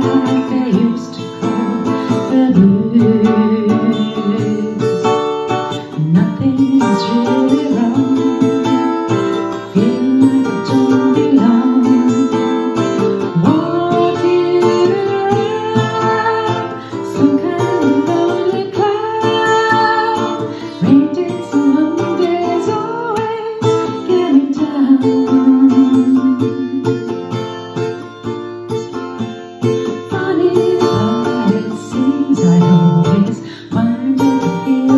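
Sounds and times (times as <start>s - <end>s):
woman singing: 0.0s - 27.4s, 29.6s - 34.9s
acoustic guitar: 0.0s - 34.9s.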